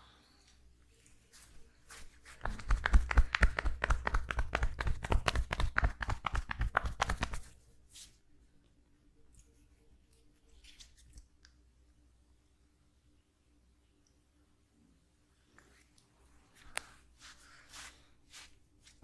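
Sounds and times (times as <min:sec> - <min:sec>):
percussive massage tapping: 0:02.4 - 0:07.5.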